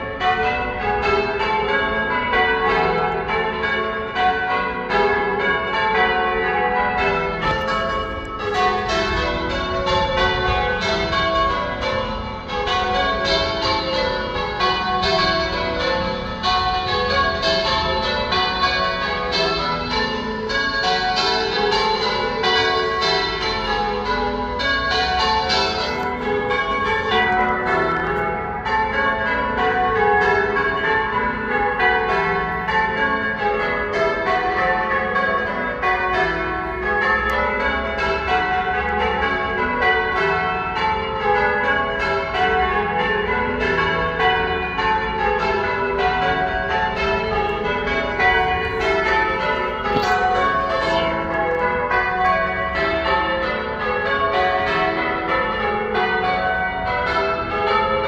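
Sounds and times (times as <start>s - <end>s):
church bells ringing: 0.0s - 58.0s.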